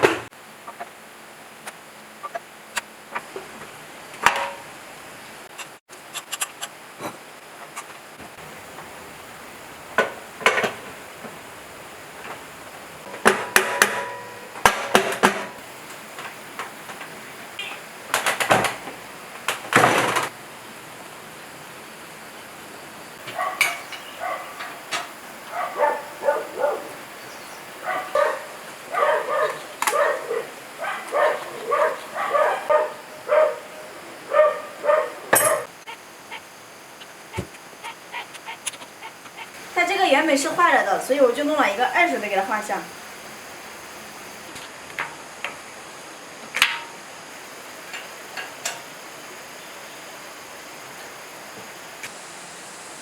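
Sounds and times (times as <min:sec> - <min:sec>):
dog barking: 0:23.2 - 0:27.1, 0:27.7 - 0:36.5, 0:37.3 - 0:39.6.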